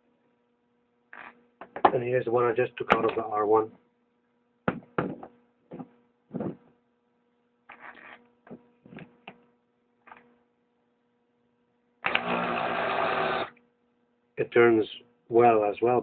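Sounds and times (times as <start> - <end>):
faint steady hum: 0.0 - 16.0
starter motor spinning: 12.1 - 13.5.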